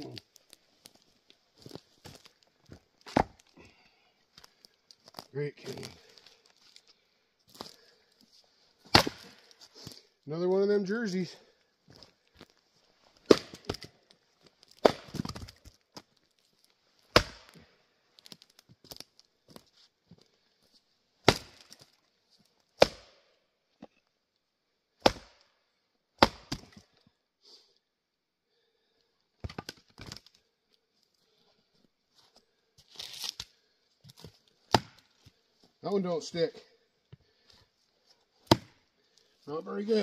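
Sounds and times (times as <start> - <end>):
wood splitting crackle: 0.0 - 3.8, 4.4 - 7.0, 8.8 - 10.1, 12.0 - 20.4, 21.2 - 23.2, 25.0 - 25.5, 26.2 - 27.0, 29.4 - 31.4, 32.8 - 35.4, 38.4 - 39.4
axe chopping wood: 3.0 - 3.4, 8.9 - 9.5, 13.2 - 13.9, 14.7 - 15.6, 17.1 - 17.6, 21.2 - 21.9, 22.8 - 23.3, 25.0 - 25.5, 26.2 - 26.8, 34.7 - 35.1, 38.4 - 38.8.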